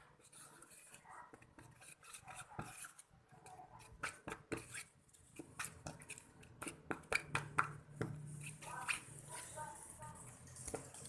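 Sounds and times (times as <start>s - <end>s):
soft rustling and scraping: 8.3s - 11.0s.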